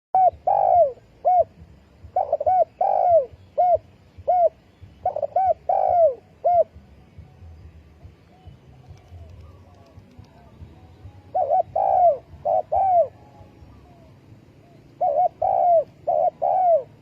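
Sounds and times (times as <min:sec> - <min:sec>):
dove cooing: 0:00.2 - 0:06.9, 0:11.2 - 0:17.0.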